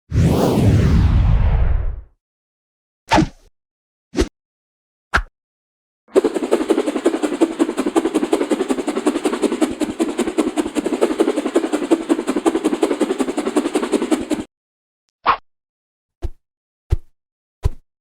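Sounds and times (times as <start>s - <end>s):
rapid pulsing whoosh: 0.1s - 2.0s, 6.1s - 14.5s.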